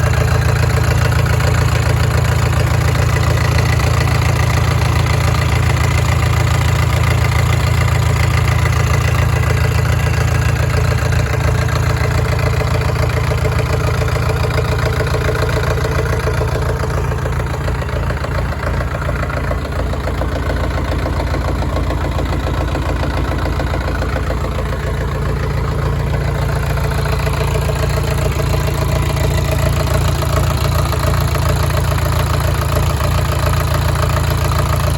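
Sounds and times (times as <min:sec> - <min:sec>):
diesel generator idling: 0:00.0 - 0:34.9.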